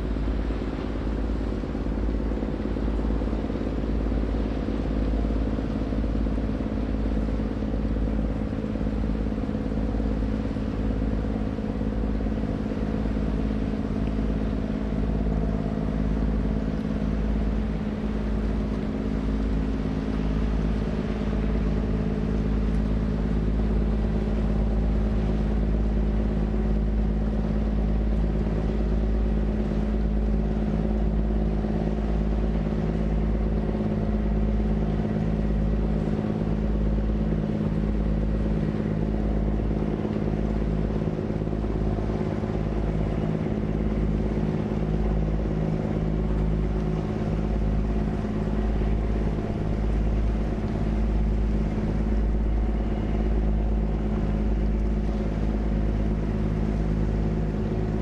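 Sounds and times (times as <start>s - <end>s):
boat engine droning: 0.0s - 58.0s
wind buffeting microphone: 12.9s - 58.0s.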